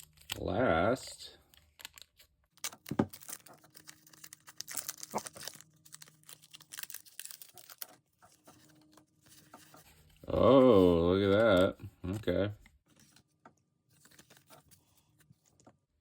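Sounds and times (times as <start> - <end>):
foil wrapper tearing and crinkling: 2.6 - 8.1.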